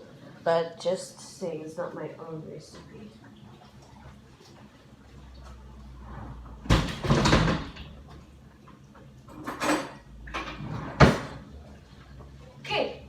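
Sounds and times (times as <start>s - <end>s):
kitchen clatter: 6.0s - 8.1s, 9.2s - 12.2s.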